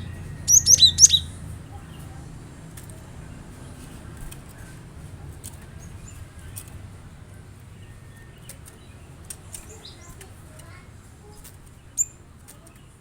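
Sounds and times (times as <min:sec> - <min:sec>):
bird clicks and chirps: 0:00.4 - 0:01.4, 0:05.4 - 0:06.9, 0:08.1 - 0:10.7, 0:11.3 - 0:12.9.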